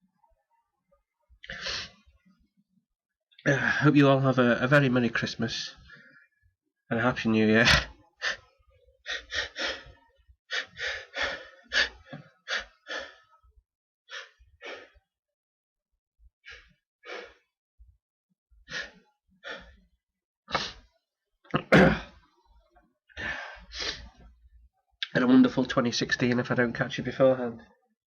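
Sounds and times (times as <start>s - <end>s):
hitching breaths before a sneeze: 20.5s - 20.9s.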